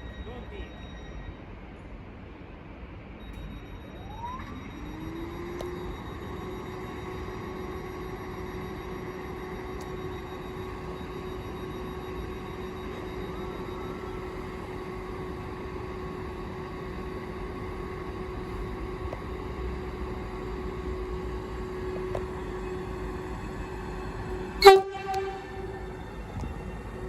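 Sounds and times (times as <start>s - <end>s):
train humming: 4.9s - 27.0s
train horn toot: 24.6s - 25.9s.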